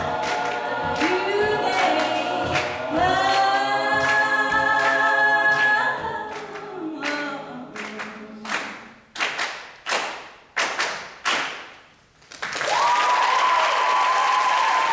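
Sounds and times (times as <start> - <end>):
audience applause: 0.0 - 4.2, 12.3 - 14.9
choir singing: 0.0 - 8.7
audience cheering: 12.6 - 14.9.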